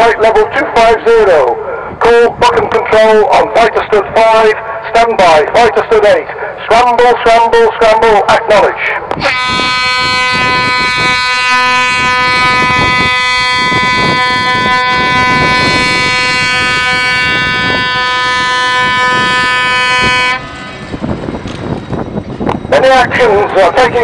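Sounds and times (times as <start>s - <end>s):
alarm hooter steady tone: 9.2s - 23.3s.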